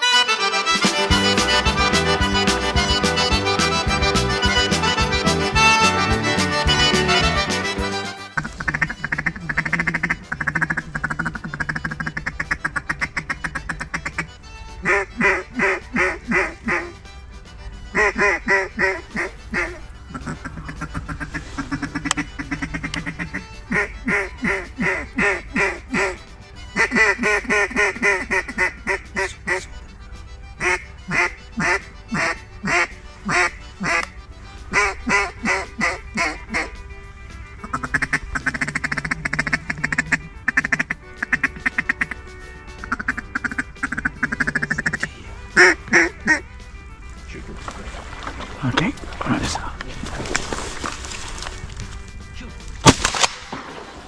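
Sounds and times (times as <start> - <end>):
music: 0.0 - 54.0
duck quacks: 1.1 - 17.0, 17.9 - 29.9, 30.6 - 36.8, 37.6 - 42.2, 42.8 - 46.5.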